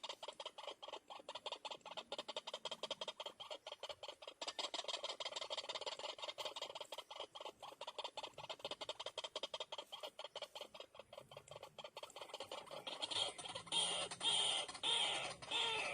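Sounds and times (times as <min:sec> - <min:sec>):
waterhen calling: 0:00.0 - 0:15.9.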